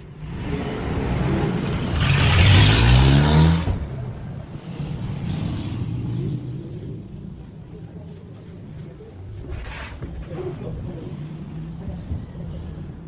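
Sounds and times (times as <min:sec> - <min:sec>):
vehicle engine revving past: 0:00.1 - 0:07.3.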